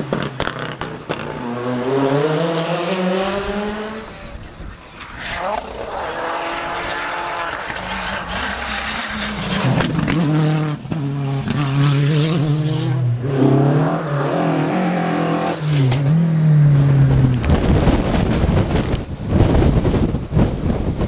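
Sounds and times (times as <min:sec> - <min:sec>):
rally car engine under load: 0:00.0 - 0:21.0.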